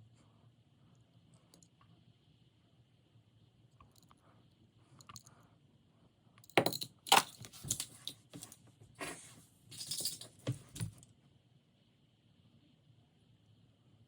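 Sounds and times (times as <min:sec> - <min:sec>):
toy cars clinking and rattling: 0:06.6 - 0:08.5, 0:09.7 - 0:10.8.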